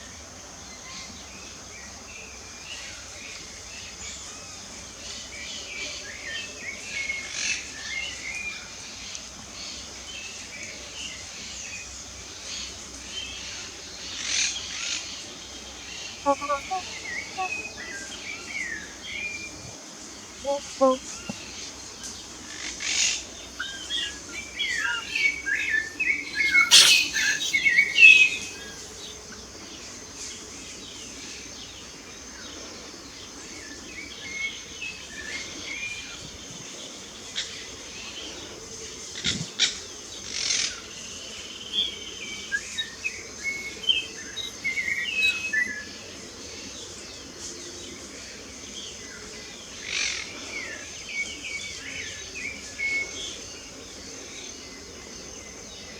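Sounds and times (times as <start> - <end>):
songbirds chirping and singing: 16.1 - 22.2, 23.2 - 32.4, 41.5 - 46.8.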